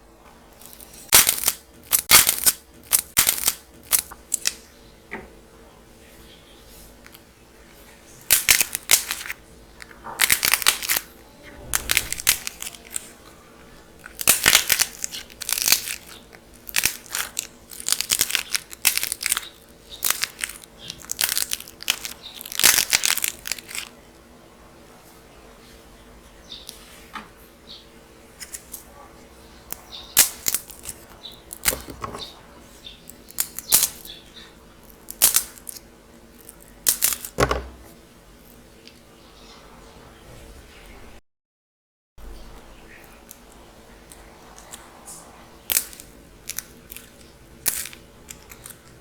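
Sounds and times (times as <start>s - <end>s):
dried clay crackling: 0.3s - 4.8s, 6.0s - 24.3s, 28.3s - 39.1s, 42.6s - 49.0s.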